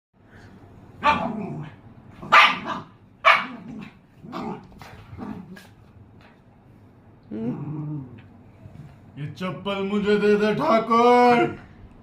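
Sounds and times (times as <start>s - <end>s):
puppy barking: 1.0s - 1.4s, 2.2s - 3.7s.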